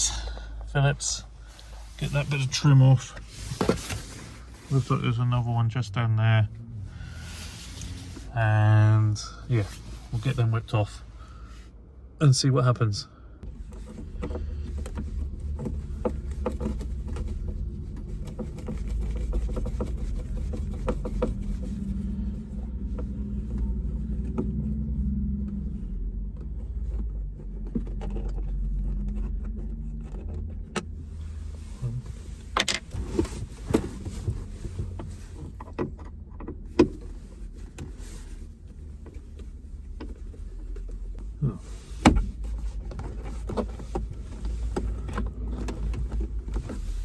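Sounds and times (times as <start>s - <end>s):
low handling rumble: 13.4s - 47.0s.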